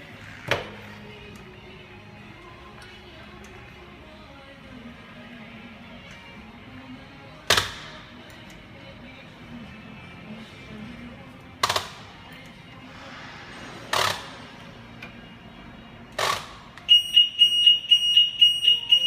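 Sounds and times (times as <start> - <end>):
car alarm pulsing beep: 16.8 - 19.0.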